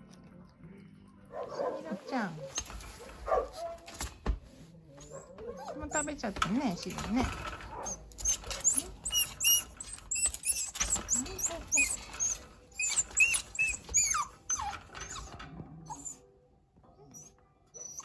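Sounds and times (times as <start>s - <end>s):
puppies eating crunching: 0.0s - 3.0s
puppies whimpering and squeaking: 5.0s - 16.3s, 17.0s - 18.0s.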